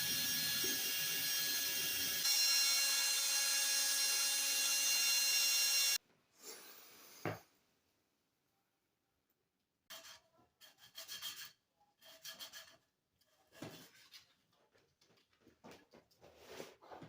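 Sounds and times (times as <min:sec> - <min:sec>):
hand tool filing strokes: 0:09.9 - 0:14.2.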